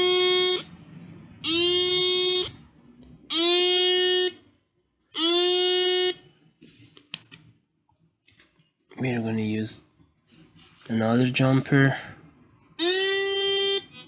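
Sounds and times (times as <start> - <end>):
buzzy alarm beeps: 0.0 - 2.6, 3.3 - 4.4, 5.1 - 6.3, 12.8 - 14.0.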